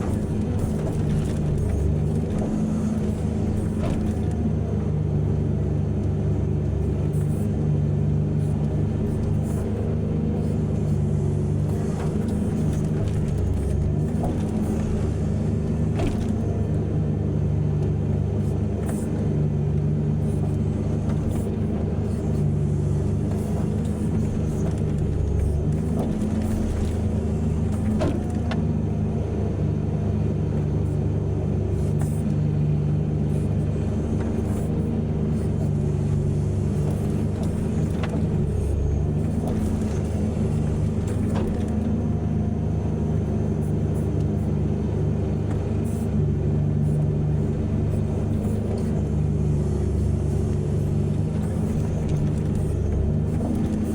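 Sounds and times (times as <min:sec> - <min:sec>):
heavy diesel engines running: 0:00.0 - 0:53.9.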